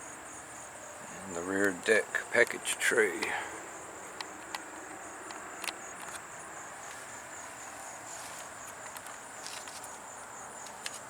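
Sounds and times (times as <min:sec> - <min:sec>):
crickets chirring: 0:00.0 - 0:11.0
faint clicks: 0:04.1 - 0:06.2.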